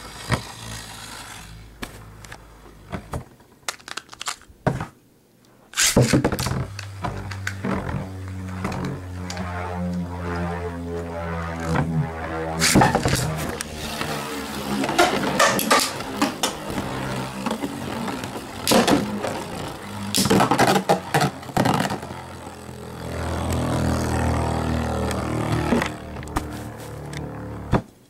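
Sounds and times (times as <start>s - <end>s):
spinning tops whirring hum: 0.0s - 2.6s, 6.3s - 27.8s
spinning tops clacking: 13.9s - 22.2s.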